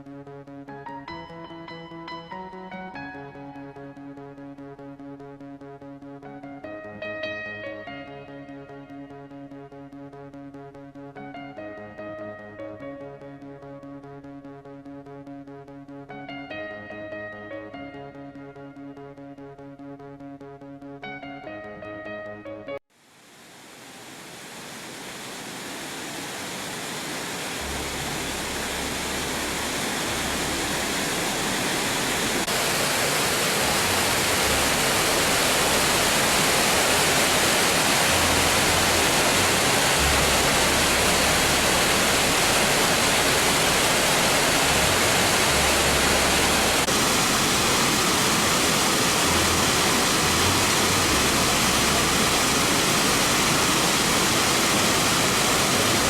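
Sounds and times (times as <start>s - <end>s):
waterfall rushing: 23.2s - 56.0s.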